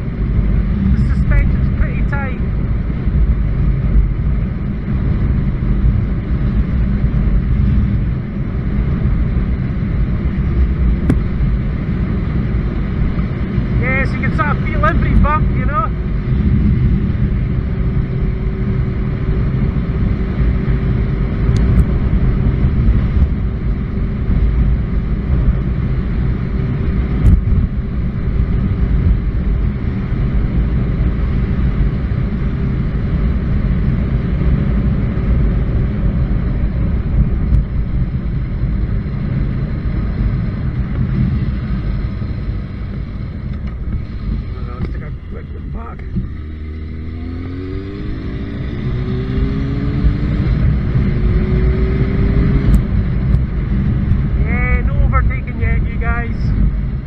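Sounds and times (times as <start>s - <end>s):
low road rumble: 0.0s - 57.0s
motorcycle engine cruising: 0.0s - 57.0s.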